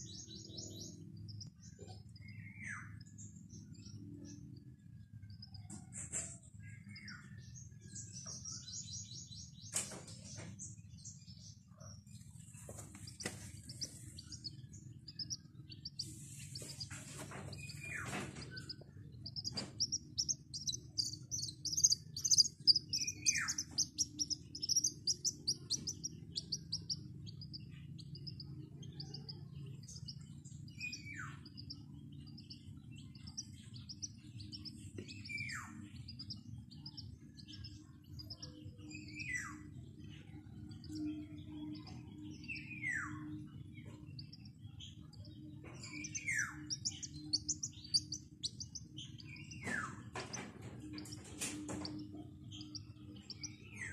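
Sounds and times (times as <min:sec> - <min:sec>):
baby chick peeping: 0:00.0 - 0:53.9.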